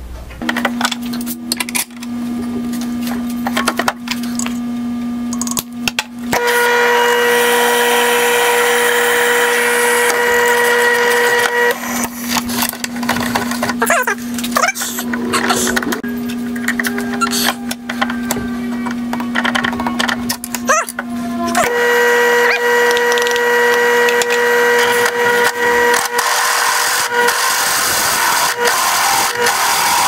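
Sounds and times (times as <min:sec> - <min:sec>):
grinding cutting into metal: 0:06.4 - 0:12.5, 0:21.5 - 0:30.0
power tool motor humming: 0:06.4 - 0:13.3, 0:20.2 - 0:30.0
scraping and clicking: 0:12.2 - 0:21.7, 0:22.5 - 0:26.3.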